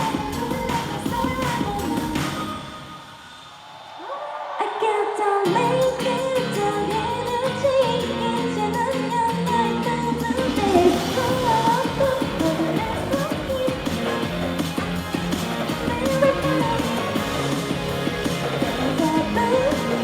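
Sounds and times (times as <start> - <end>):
woman singing pop-rock: 0.0 - 2.7, 4.6 - 20.0
live band with bass and drums: 10.1 - 20.0.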